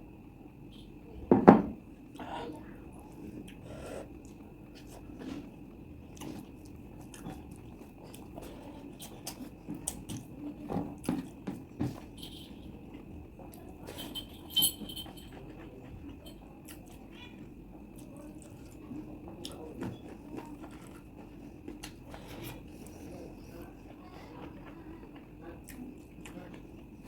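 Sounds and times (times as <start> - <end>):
chewing and wet mouth sounds: 2.9 - 11.5, 15.0 - 27.0.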